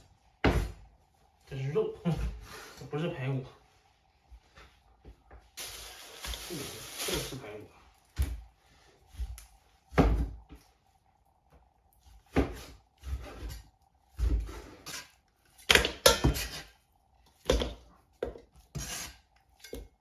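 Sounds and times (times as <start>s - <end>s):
sharp kitchen knocks and clatters: 0.4s - 0.9s, 9.9s - 10.5s, 12.2s - 16.7s, 17.4s - 19.0s.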